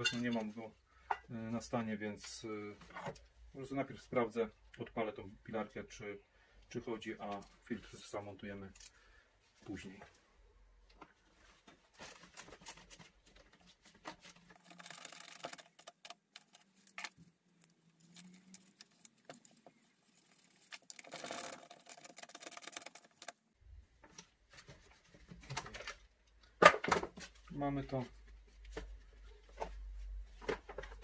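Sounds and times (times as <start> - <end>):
small parts clicking and rattling: 14.0 - 23.4.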